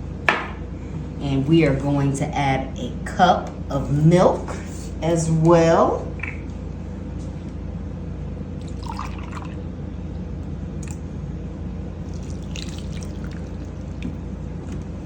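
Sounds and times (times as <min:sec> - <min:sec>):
steady low hum: 0:00.0 - 0:15.0
milk pouring into a bowl: 0:08.6 - 0:09.6, 0:12.0 - 0:14.4.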